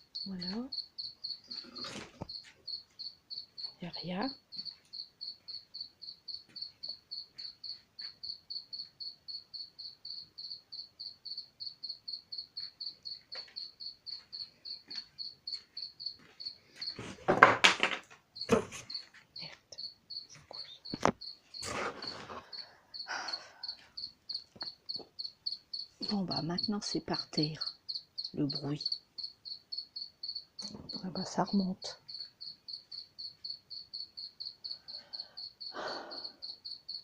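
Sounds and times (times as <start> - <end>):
cricket chirping: 0.0 - 37.0
rustling and knocking: 16.8 - 19.2.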